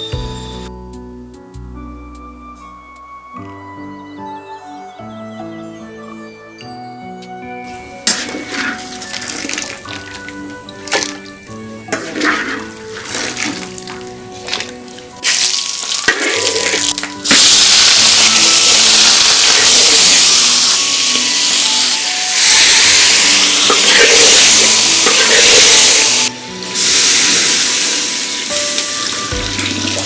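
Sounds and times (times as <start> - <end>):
food sizzling in hot oil: 7.7 - 30.0.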